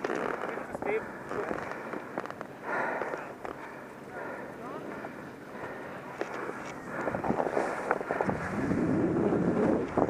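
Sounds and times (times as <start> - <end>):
person breathing hard: 1.0 - 8.6.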